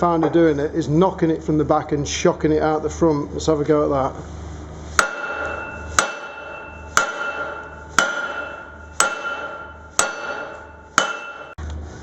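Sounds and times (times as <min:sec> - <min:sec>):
hammer blows on metal hub: 0:04.9 - 0:11.6.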